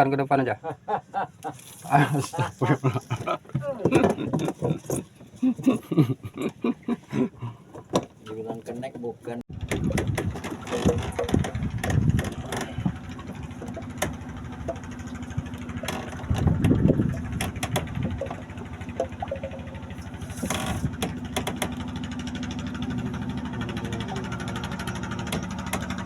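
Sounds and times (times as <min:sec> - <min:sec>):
boat engine humming: 0:00.0 - 0:26.0
knocks and clicks: 0:09.5 - 0:21.9.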